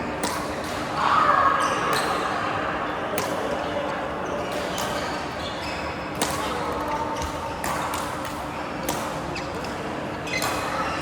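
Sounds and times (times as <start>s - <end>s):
rackets striking shuttlecock: 0.2s - 1.0s, 3.2s - 3.5s, 6.1s - 11.0s.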